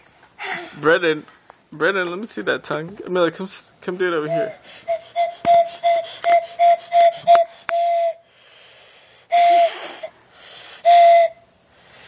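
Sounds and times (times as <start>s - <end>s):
train whistle toots: 4.3s - 8.2s, 9.3s - 10.2s, 10.8s - 11.4s.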